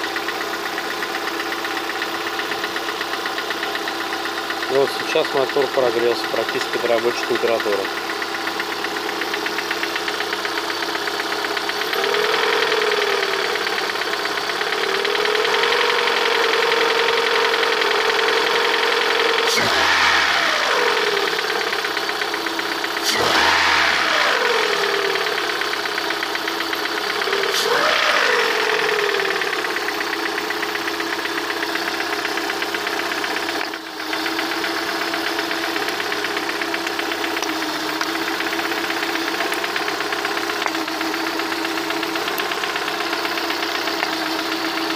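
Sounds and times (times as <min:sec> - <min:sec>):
car engine idling and revving: 0:00.0 - 0:44.9.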